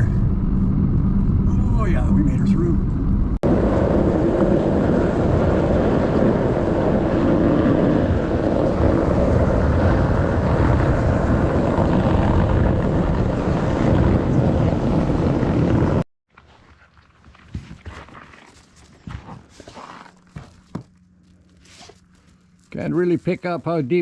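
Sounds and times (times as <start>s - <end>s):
snow dragging under truck: 3.4s - 16.0s
truck engine and tyres churning snow: 3.4s - 23.9s.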